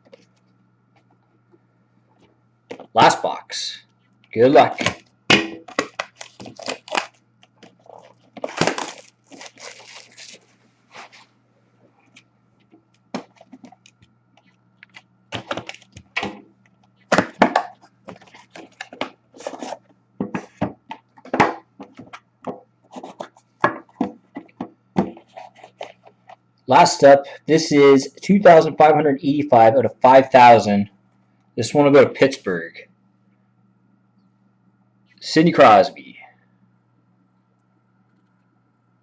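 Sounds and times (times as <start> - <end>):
sharp handling noises: 4.2 - 11.3
wrapper tearing and crinkling: 5.7 - 10.5.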